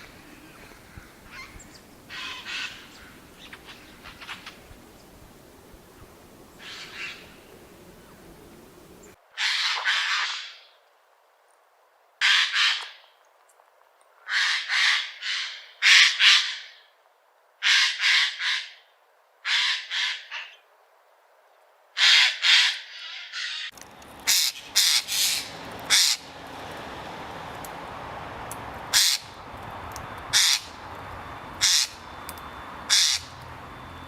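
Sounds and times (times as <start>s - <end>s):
jay screeching calls: 0.5s - 4.6s, 24.3s - 26.3s, 28.9s - 29.4s, 30.3s - 30.8s, 31.6s - 32.1s, 32.9s - 33.4s.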